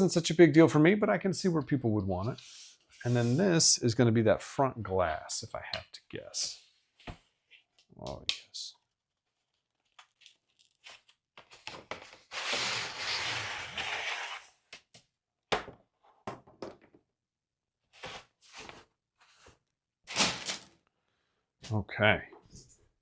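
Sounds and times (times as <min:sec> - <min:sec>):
packaging tearing and rustling: 0:09.4 - 0:14.4, 0:20.1 - 0:20.8.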